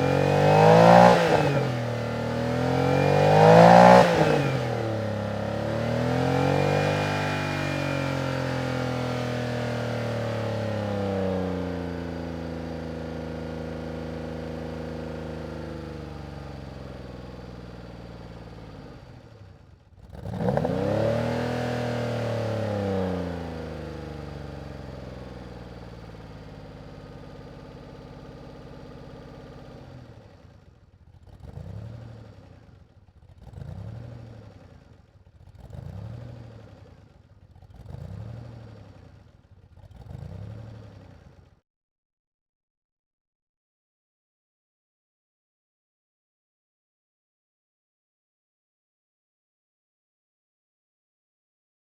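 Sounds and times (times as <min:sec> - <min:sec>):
car engine revving: 0:00.0 - 0:09.0, 0:35.4 - 0:36.9, 0:37.6 - 0:39.0, 0:39.8 - 0:41.3.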